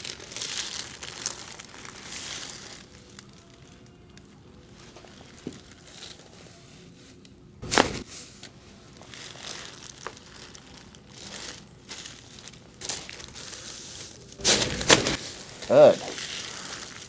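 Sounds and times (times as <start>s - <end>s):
crinkling and rustling on table: 4.8s - 17.0s.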